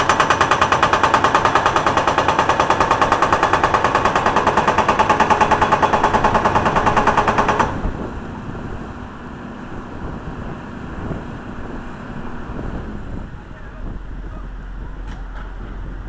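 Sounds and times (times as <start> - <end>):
hydraulic breaker hammer pounding: 0.0 - 8.0
low engine noise: 0.0 - 16.0.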